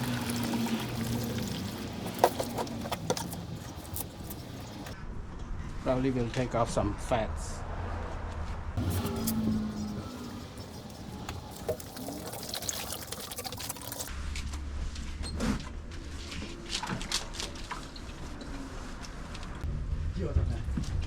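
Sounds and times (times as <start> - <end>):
liquid pouring and splashing: 0.0 - 5.0, 8.8 - 14.1.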